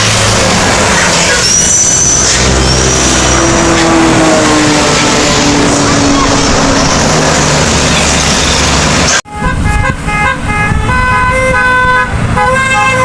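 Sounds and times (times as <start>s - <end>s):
loud rushing noise: 0.0s - 10.1s
bus engine rumble: 0.0s - 13.0s
musical air horn melody: 8.4s - 13.0s.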